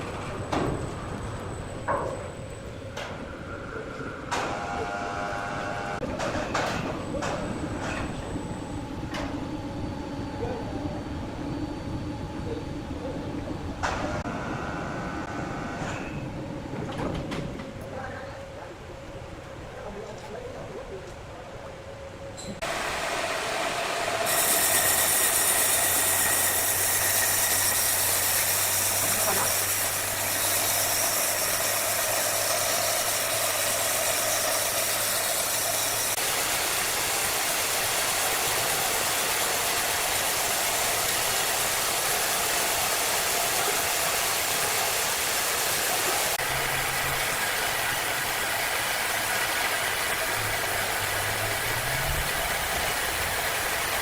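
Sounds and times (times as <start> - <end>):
wood-cutting saw machine running: 22.6 - 54.0.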